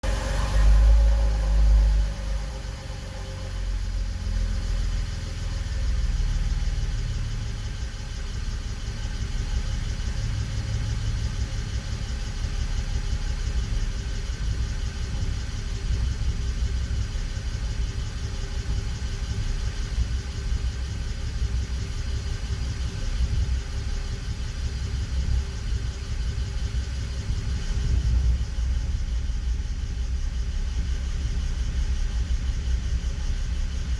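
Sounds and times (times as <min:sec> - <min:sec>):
car engine rough idle: 0:00.0 - 0:33.9.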